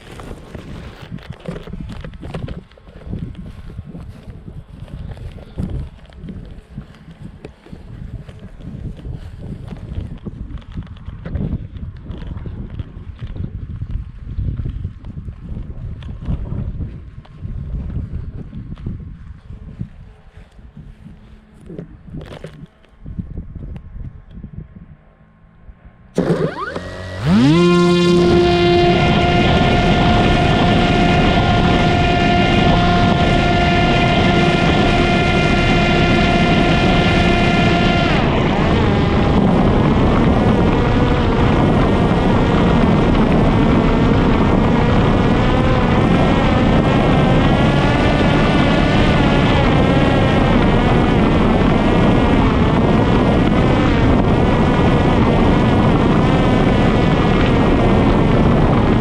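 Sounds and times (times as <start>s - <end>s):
wind rush: 0.0s - 59.0s
drone propeller high whine: 25.0s - 59.0s.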